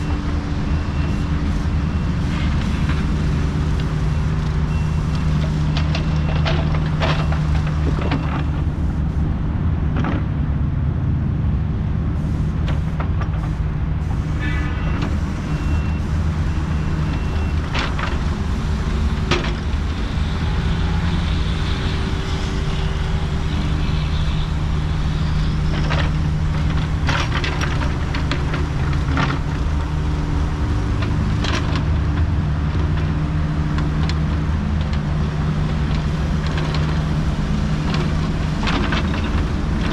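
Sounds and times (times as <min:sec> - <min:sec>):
excavator diesel engine running: 0:00.0 - 0:39.9
machine clanks and knocks: 0:19.2 - 0:20.0, 0:37.8 - 0:39.9.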